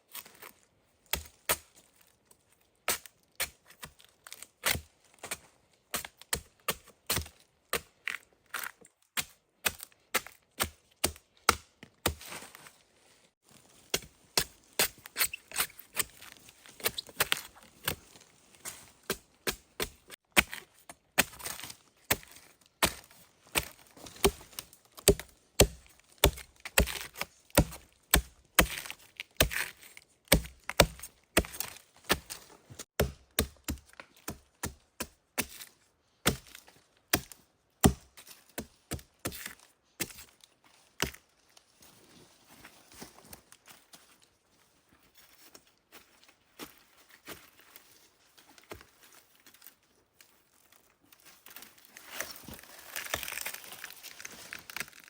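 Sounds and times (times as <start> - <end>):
blade chopping into wood: 23.6 - 29.7, 30.3 - 32.4, 33.0 - 35.6, 36.3 - 39.4.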